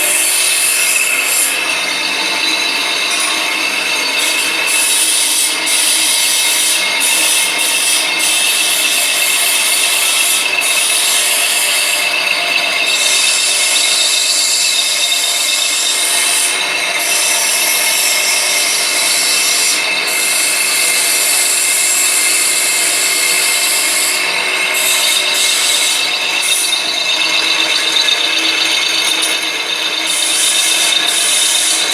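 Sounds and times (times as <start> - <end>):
metal rubbing and grating: 23.5 - 31.9.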